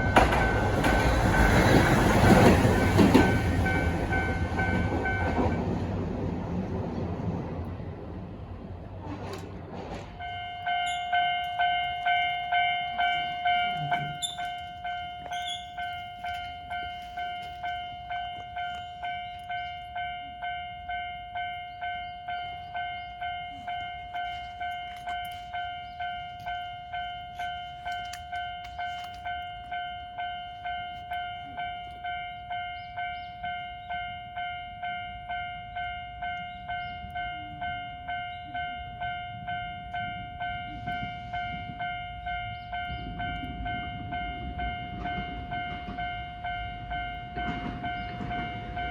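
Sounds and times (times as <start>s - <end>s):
level crossing warning bell: 0.0s - 6.3s, 10.0s - 48.9s.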